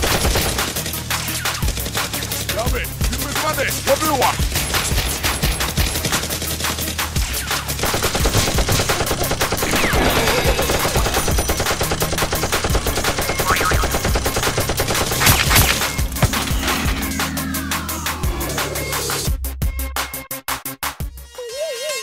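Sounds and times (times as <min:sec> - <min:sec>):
rapid automatic gunfire: 0:00.0 - 0:16.4
bass-heavy background music: 0:00.0 - 0:22.0.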